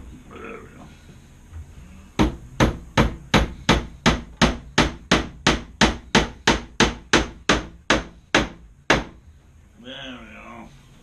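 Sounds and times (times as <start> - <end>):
hammer driving a nail into wood: 2.2 - 9.2.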